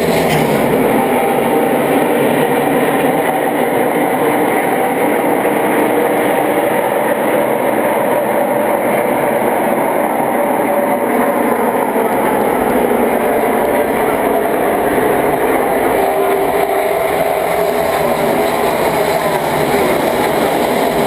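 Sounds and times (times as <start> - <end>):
loud vehicle noise: 0.0 - 21.0.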